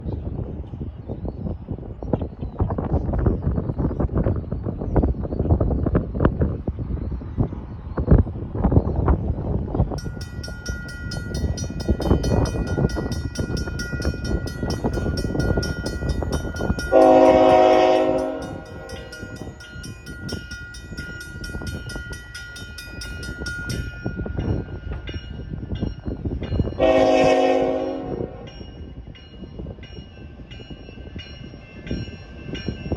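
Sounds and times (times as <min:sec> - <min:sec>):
crossing bell ringing: 0:09.8 - 0:32.9
locomotive horn blasts: 0:16.9 - 0:19.2, 0:26.8 - 0:28.4.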